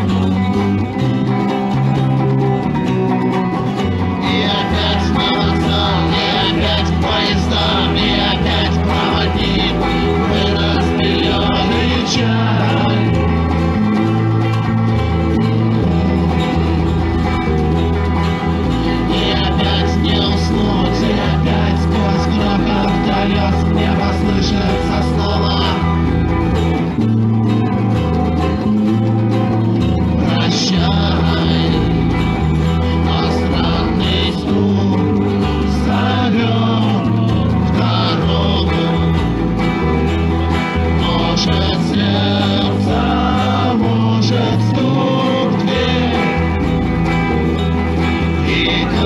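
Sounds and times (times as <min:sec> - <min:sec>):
bass holding long low notes: 0:00.0 - 0:49.0
electric guitar playing rock: 0:00.0 - 0:49.0
person singing: 0:04.0 - 0:14.3, 0:18.8 - 0:26.6, 0:29.5 - 0:47.0, 0:47.9 - 0:49.0.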